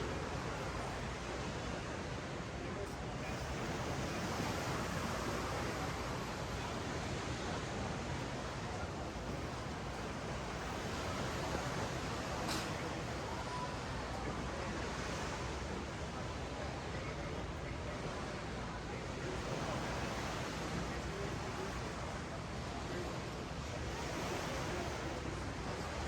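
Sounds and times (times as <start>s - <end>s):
ocean waves washing on beach: 0.0s - 26.0s
faint click: 12.4s - 12.8s.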